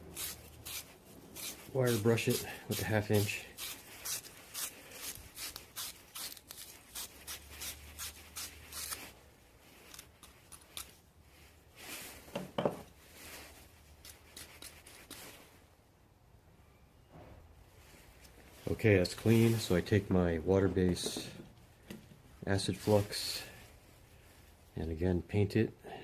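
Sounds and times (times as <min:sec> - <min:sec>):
wire brush scrubbing pipe fitting: 0:00.2 - 0:09.0.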